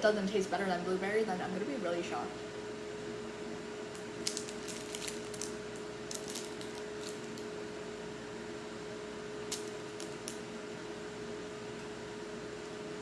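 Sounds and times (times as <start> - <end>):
range hood fan humming: 0.0 - 13.0
short clicks and crackles: 3.9 - 7.5, 9.5 - 10.4.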